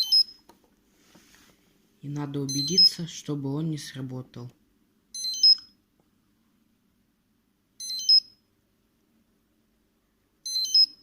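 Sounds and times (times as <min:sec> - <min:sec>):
alarm panel chirping: 0:00.0 - 0:00.4, 0:02.4 - 0:03.1, 0:05.2 - 0:05.8, 0:07.8 - 0:08.4, 0:10.4 - 0:11.0.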